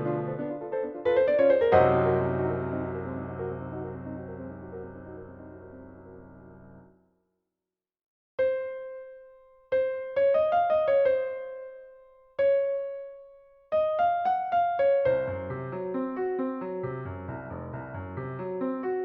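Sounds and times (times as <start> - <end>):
held keyboard chord: 0.0 - 6.8.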